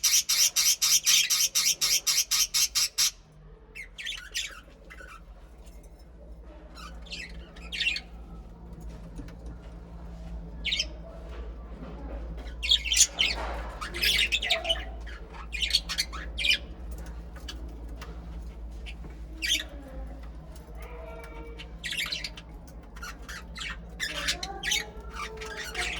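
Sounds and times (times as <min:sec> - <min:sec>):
budgerigars chirping and squawking: 0:00.0 - 0:03.2, 0:03.8 - 0:05.3, 0:06.8 - 0:08.4, 0:10.2 - 0:11.2, 0:12.4 - 0:25.9
faint low hum: 0:01.2 - 0:25.9.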